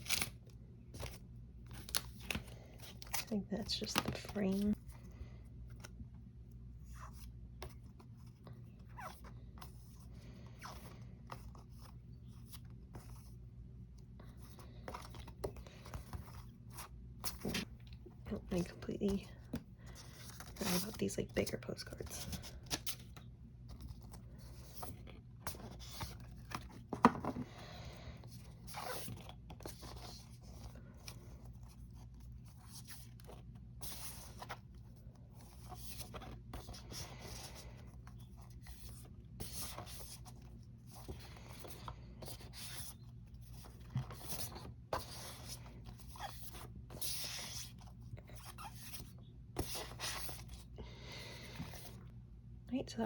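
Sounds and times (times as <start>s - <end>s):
cardboard rustling and scraping: 14.4s - 27.6s, 28.3s - 50.7s.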